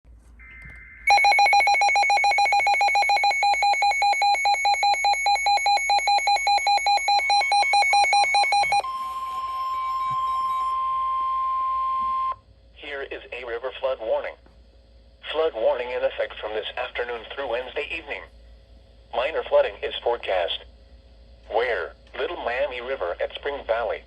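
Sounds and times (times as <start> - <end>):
steady warning alarm tone: 0.4 - 12.4
rapid harsh alarm beeps: 0.5 - 12.4.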